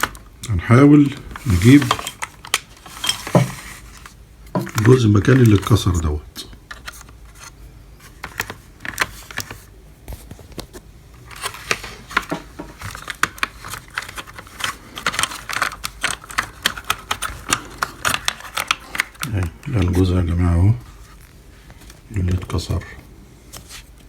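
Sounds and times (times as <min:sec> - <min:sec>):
plastic parts clicking and tapping: 0:00.0 - 0:00.4, 0:01.0 - 0:05.8, 0:08.1 - 0:09.7, 0:10.5 - 0:20.0.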